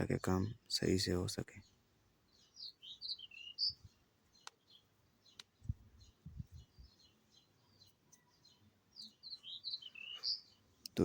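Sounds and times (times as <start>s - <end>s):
faint bird chirps: 0.0s - 11.0s.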